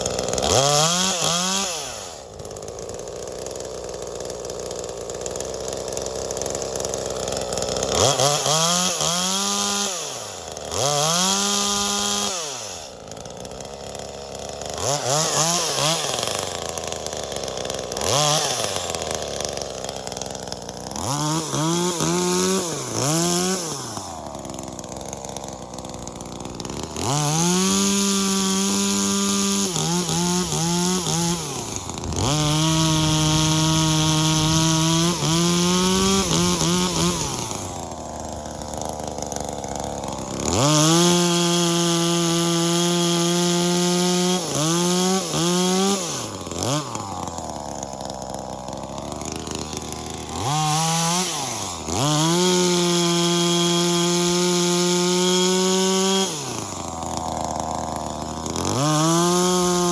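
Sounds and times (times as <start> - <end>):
chainsaw engine revving: 0.0 - 59.9.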